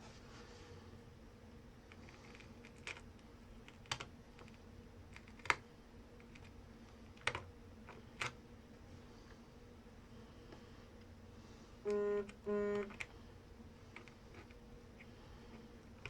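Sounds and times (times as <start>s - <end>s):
faint hum: 0.0s - 16.0s.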